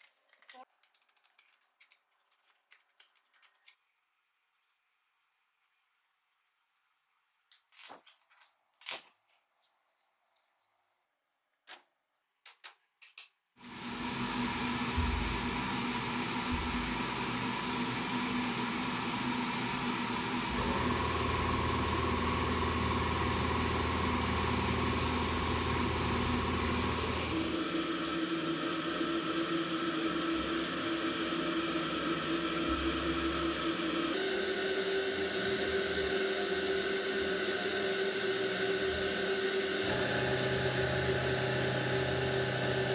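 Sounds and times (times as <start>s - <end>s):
small motorised tool running: 13.6s - 42.9s.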